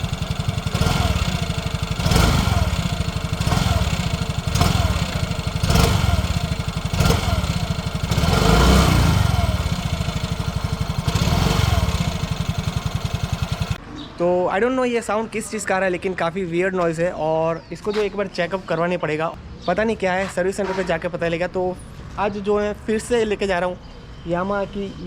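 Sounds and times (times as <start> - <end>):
scooter engine running: 0.0 - 13.8
wheel knocking: 0.0 - 13.8.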